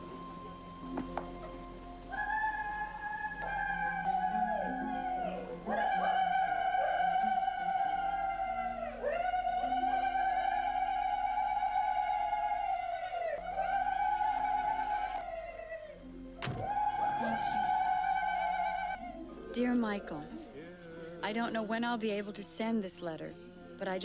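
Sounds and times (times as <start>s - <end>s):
soundtrack music with wavering melody: 0.0s - 8.1s, 12.8s - 20.6s.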